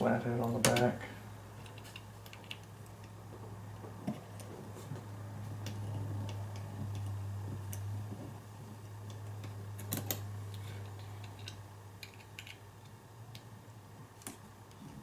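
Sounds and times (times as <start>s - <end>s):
small metal lock parts clicking: 1.6s - 3.2s, 10.8s - 13.5s.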